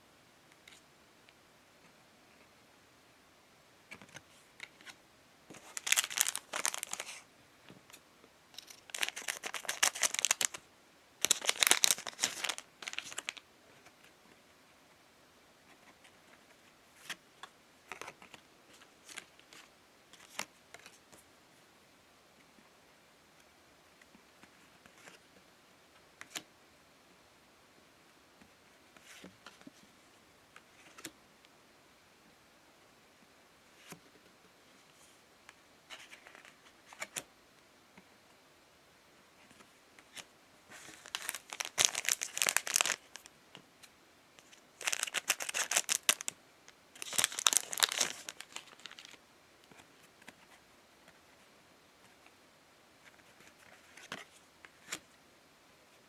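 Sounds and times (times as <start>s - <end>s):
wrapper crinkling and tearing: 5.6s - 7.2s, 8.6s - 10.6s, 11.2s - 13.4s, 40.8s - 43.3s, 44.4s - 46.3s, 47.0s - 49.2s.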